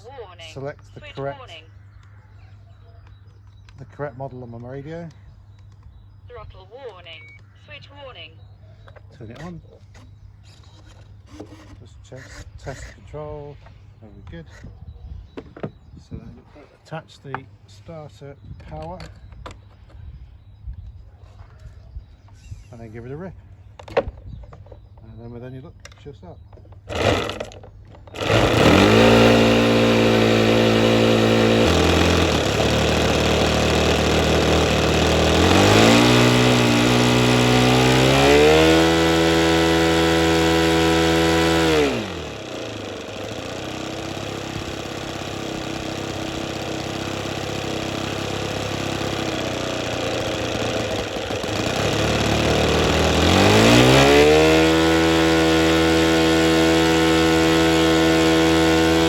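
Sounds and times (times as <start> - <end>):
model aircraft engine running: 26.9 - 59.0.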